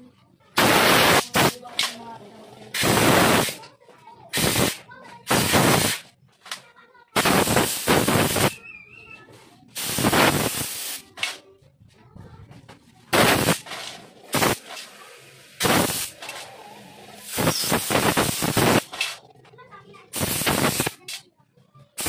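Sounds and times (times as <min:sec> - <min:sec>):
air blow gun hissing blasts: 0:00.6 - 0:01.6, 0:02.7 - 0:03.6, 0:04.3 - 0:06.0, 0:07.2 - 0:08.6, 0:09.8 - 0:11.1, 0:13.1 - 0:19.1, 0:20.1 - 0:21.0.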